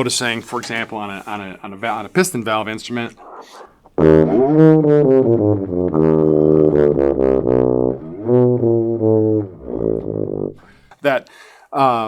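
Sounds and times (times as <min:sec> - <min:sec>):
tuba with bending notes: 0:03.2 - 0:10.9.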